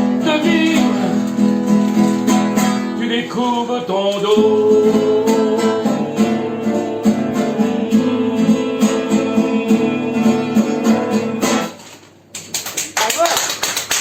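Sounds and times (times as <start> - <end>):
picked guitar pattern: 4.4 - 11.8
audience applause: 12.4 - 14.0.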